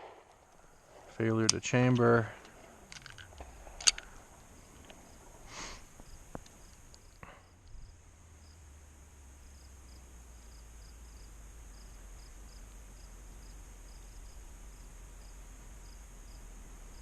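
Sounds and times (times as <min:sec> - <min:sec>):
faint rustle: 0:00.0 - 0:08.6
insects chirping: 0:00.0 - 0:17.0
steady low hum: 0:00.0 - 0:17.0
faint clicks: 0:00.2 - 0:05.1, 0:05.9 - 0:07.8.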